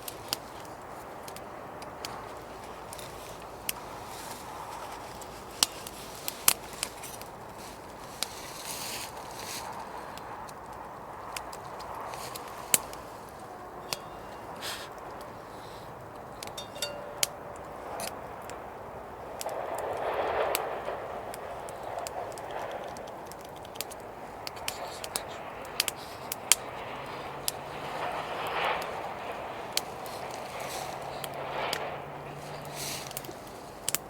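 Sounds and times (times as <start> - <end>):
campfire crackling and popping: 0.0 - 34.0.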